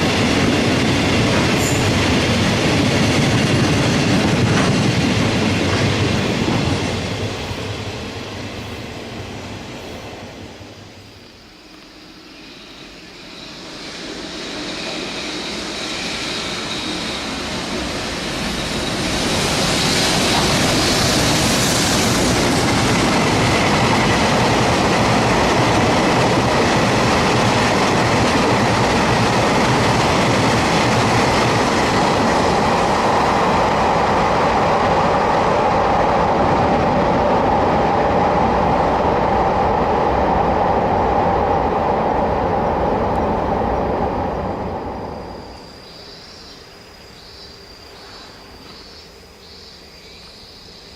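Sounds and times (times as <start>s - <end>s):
wheels clickety-clack: 0.0s - 7.0s
freight train rumbling past: 0.0s - 49.4s.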